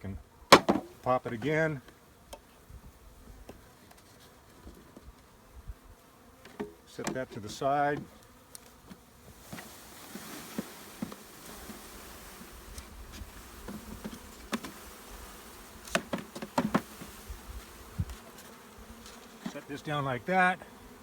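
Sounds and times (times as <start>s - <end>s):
honeybees buzzing: 0.1s - 21.0s
sharp knocks: 0.5s - 0.9s.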